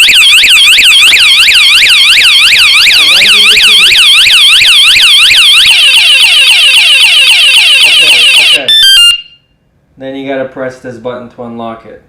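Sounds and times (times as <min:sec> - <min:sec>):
bike alarm siren: 0:00.0 - 0:09.5.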